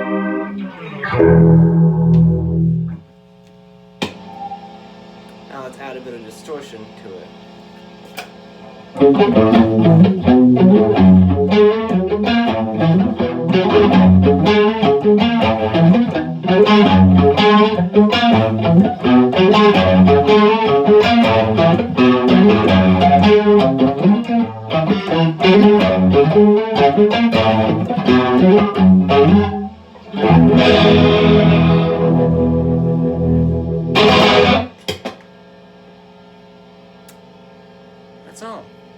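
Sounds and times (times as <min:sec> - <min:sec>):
electric guitar riff with flanger: 0:00.0 - 0:03.1, 0:08.9 - 0:34.8.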